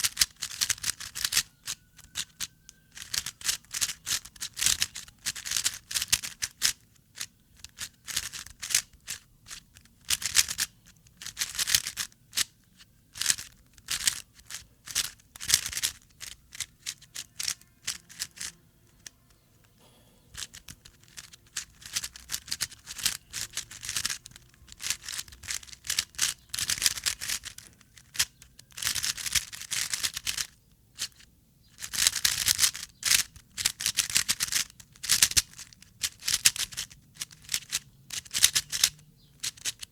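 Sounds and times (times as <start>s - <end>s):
puzzle cube layers clicking: 0.0s - 1.5s, 2.1s - 12.5s, 13.2s - 19.8s, 20.4s - 31.2s, 31.8s - 39.9s.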